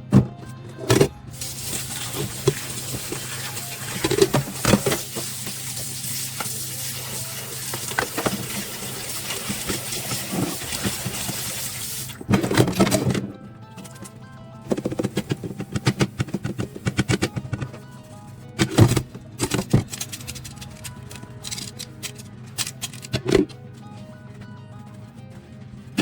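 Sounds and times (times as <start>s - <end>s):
tap running into sink: 7.6s - 11.8s.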